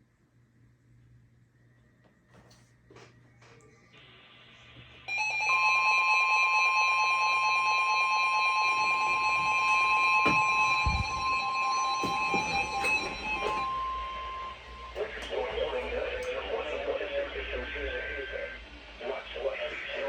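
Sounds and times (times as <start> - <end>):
steady warning alarm tone: 5.1 - 20.0
low knocks: 9.0 - 13.8.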